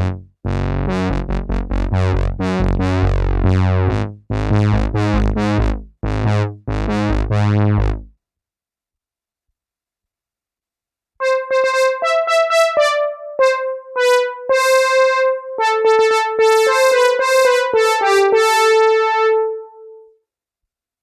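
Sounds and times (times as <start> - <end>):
synthesizer melody: 11.2 - 20.0.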